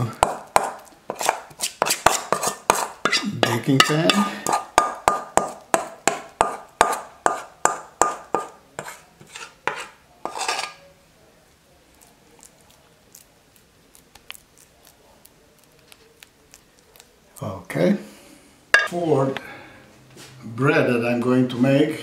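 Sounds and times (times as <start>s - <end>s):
utensil scraping a mixing bowl: 0.2s - 5.5s, 6.4s - 10.8s.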